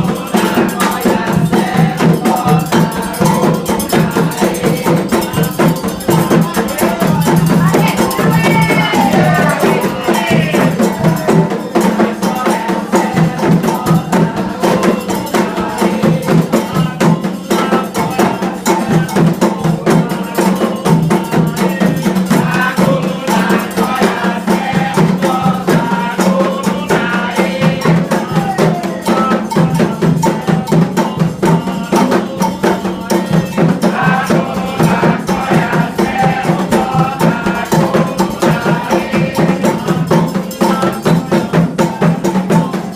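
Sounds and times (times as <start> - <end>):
hand drums playing fast rhythm: 0.0 - 42.9
metal bell ringing: 0.0 - 42.9
voices singing: 0.0 - 42.9.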